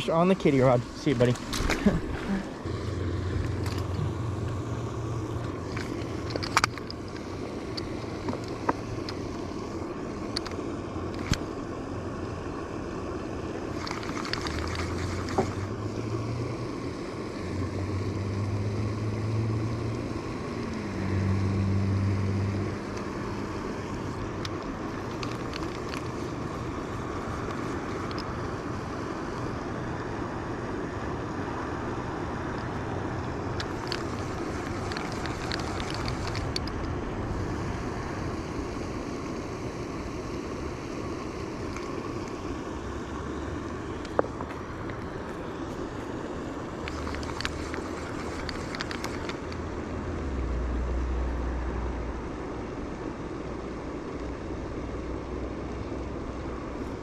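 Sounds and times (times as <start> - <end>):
low motor hum: 0.0 - 40.9
outdoor noise: 0.0 - 57.0
sharp clicks: 33.6 - 37.0.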